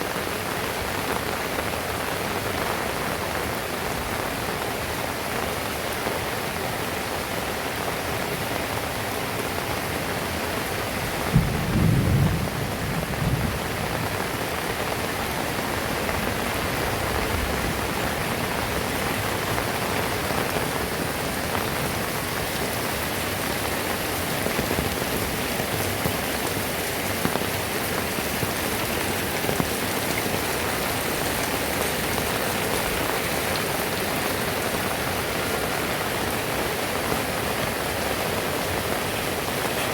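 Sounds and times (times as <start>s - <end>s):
heavy rain falling: 0.0s - 39.9s
thunder clap rumbling: 11.3s - 14.4s.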